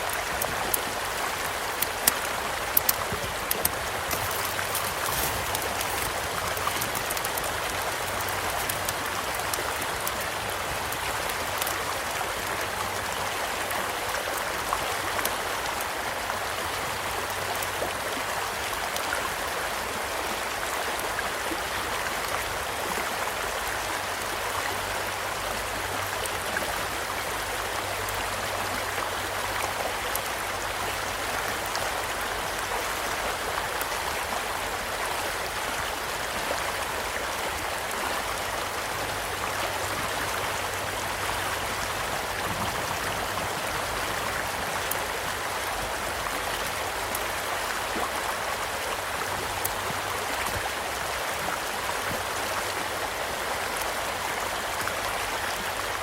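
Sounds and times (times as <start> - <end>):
campfire crackles and pops: 0.0 - 16.0
small stream flowing: 0.0 - 56.0.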